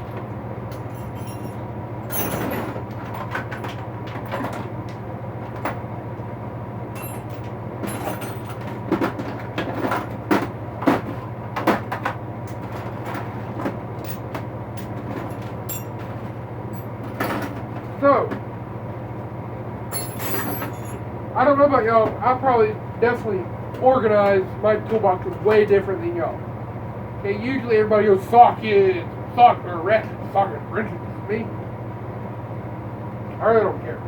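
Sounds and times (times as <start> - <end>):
steady low hum: 0.0 - 34.0
metal tools clinking in toolbox: 0.7 - 4.6, 7.0 - 8.8, 14.0 - 16.1, 16.7 - 17.6, 19.9 - 21.0.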